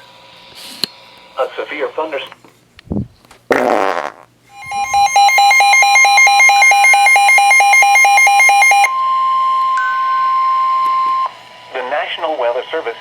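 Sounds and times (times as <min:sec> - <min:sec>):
rapid two-pitch alarm beeping: 0:04.5 - 0:11.3
steady alarm tone: 0:04.5 - 0:11.4.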